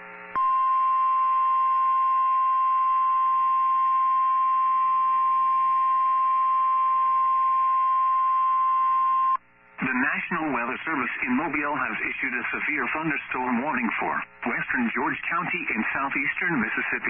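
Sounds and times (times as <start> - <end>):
steady high alarm beep: 0.4 - 9.4
faint radio static: 9.5 - 17.0.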